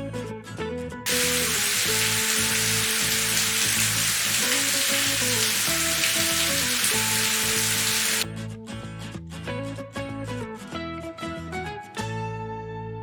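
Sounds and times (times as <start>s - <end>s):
dense hiss with crackles: 1.1s - 8.2s.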